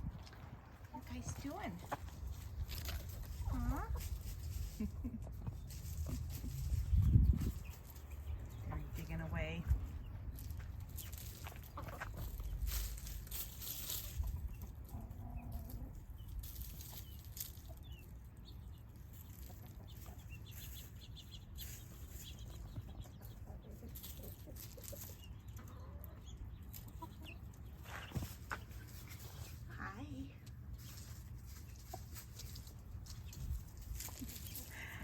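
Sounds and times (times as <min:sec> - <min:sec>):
chickens clucking: 0:00.0 - 0:29.7, 0:30.4 - 0:35.0
rustling leaf litter: 0:01.0 - 0:09.6, 0:10.3 - 0:14.8.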